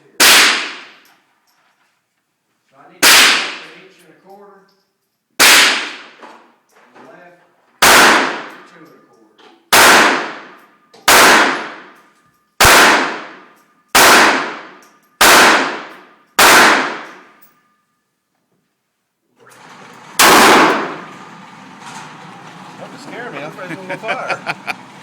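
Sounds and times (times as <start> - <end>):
revolver gunshots ringing: 0.2 - 1.0, 3.0 - 3.8, 5.4 - 6.2, 7.8 - 8.8, 9.7 - 17.7, 20.2 - 21.1.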